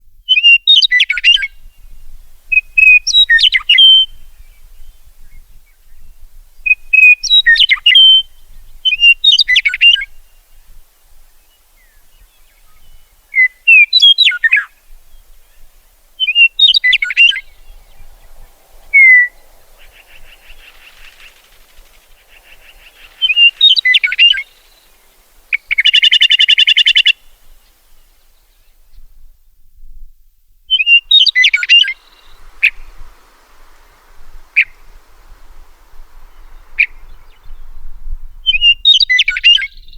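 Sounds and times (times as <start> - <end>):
bird whistling song: 0.3 - 10.6, 11.4 - 28.8, 30.7 - 39.9
bird buzzy rattle call: 15.9 - 27.2.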